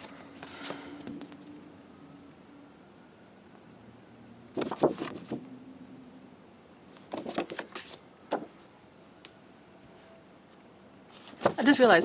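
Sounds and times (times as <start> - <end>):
cards rustling and tapping: 7.0 - 8.5.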